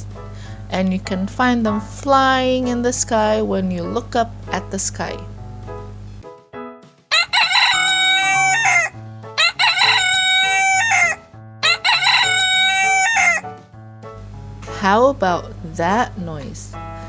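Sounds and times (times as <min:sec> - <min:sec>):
rooster crowing: 0:07.1 - 0:13.5.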